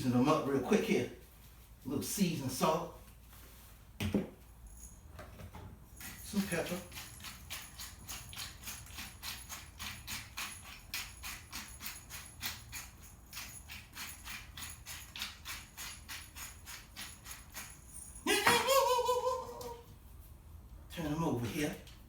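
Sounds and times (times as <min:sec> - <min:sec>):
pepper dispenser rattling: 0:06.1 - 0:17.7.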